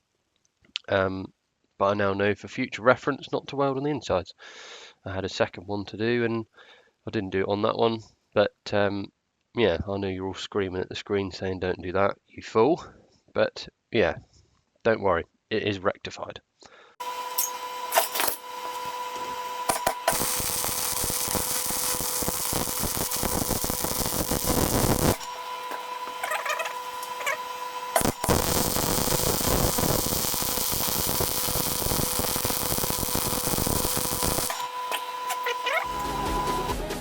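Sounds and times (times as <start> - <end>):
arc welding crackling hiss: 17.0 - 36.7
electrical hum: 17.0 - 36.7.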